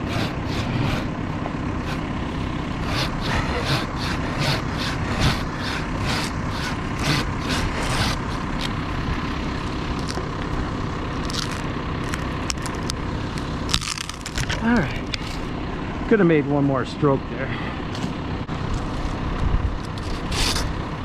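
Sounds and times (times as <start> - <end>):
hand saw cutting branch: 0.0 - 10.3, 19.9 - 20.8
engine drone: 0.0 - 21.0.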